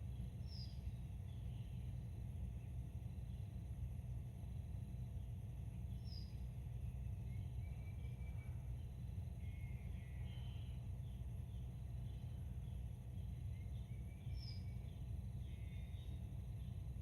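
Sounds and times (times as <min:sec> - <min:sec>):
low outdoor rumble: 0:00.0 - 0:17.0
birds chirping and whistling: 0:07.2 - 0:08.6, 0:09.4 - 0:16.2.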